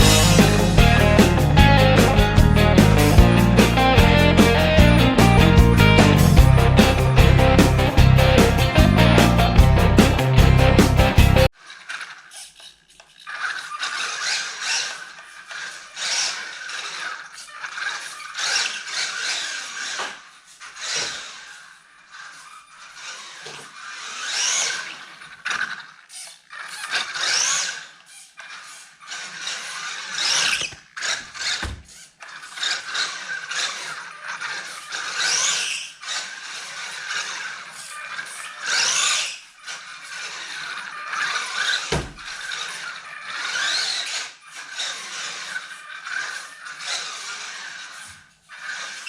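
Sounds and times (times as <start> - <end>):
toy truck motor whining: 10.8 - 49.0
dull thumps: 41.9 - 42.3.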